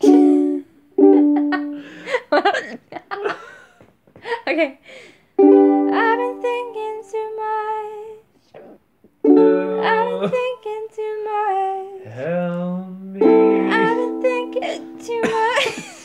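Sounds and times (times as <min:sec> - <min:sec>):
ukulele chords strummed: 0:00.0 - 0:01.9, 0:05.4 - 0:07.1, 0:09.2 - 0:10.6, 0:13.1 - 0:15.5
person singing wavering note: 0:09.4 - 0:10.4, 0:12.1 - 0:15.1.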